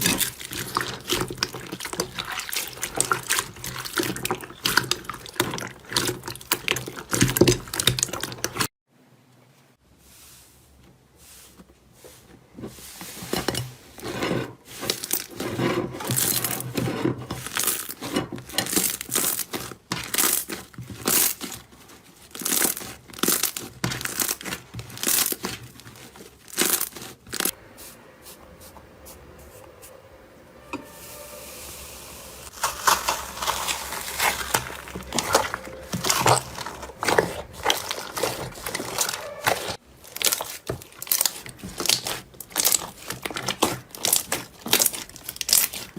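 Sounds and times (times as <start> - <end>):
slime crackling and popping: 22.3 - 27.5, 32.5 - 45.9.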